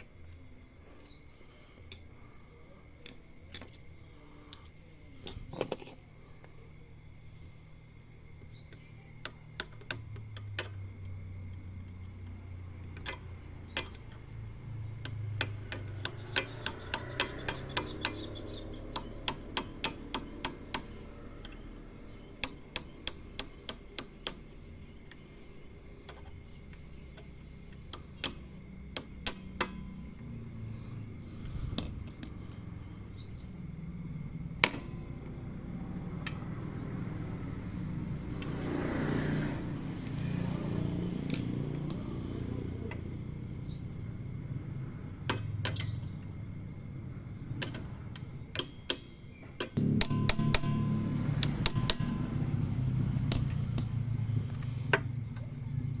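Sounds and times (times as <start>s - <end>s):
metallic taps and clicks: 8.7s - 21.7s, 22.3s - 25.4s, 26.0s - 30.3s, 45.2s - 46.3s, 47.5s - 55.5s.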